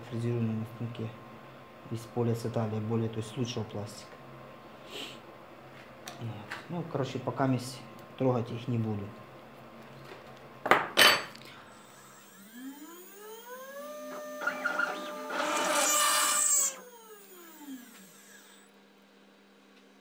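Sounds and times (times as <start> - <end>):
milling spindle whining: 11.8 - 18.6.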